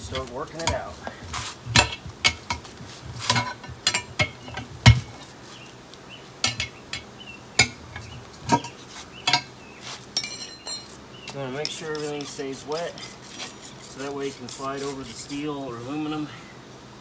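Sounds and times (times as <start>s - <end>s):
tire spoons knocking on rim: 0.0s - 5.2s, 6.4s - 9.5s.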